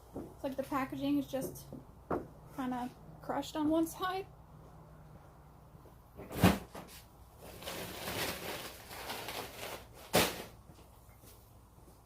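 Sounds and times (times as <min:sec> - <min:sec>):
rustling: 0:06.3 - 0:11.5.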